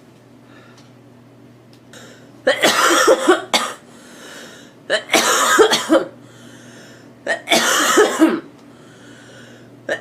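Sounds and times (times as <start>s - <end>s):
girl coughing: 2.5s - 3.8s, 4.9s - 6.2s, 7.3s - 8.5s.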